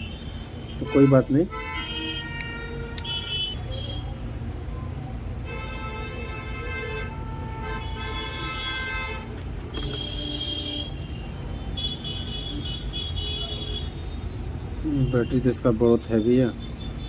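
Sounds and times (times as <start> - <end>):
car horns honking: 0.0 - 4.2, 5.4 - 14.3, 14.9 - 17.0
road traffic rumble: 0.0 - 17.0.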